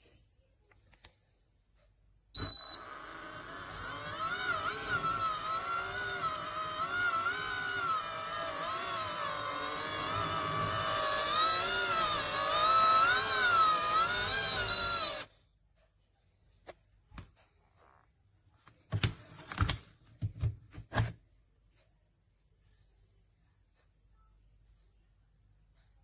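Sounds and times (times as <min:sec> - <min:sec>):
ice cream maker motor whine: 0:02.4 - 0:15.3.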